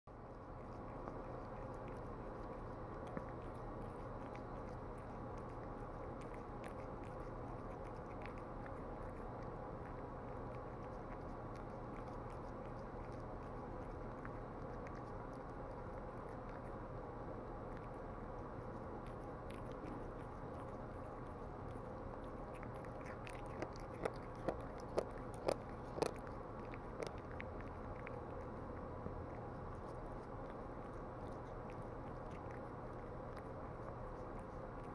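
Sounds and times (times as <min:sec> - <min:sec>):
cat chewing food: 0:00.1 - 0:34.9
steady low hum: 0:00.1 - 0:34.9.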